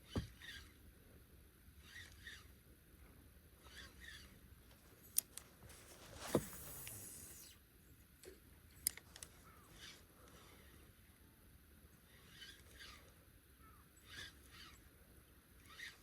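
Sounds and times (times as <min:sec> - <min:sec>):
fishing tackle clicks: 0:08.8 - 0:09.3
faint bird chirps: 0:12.0 - 0:14.9.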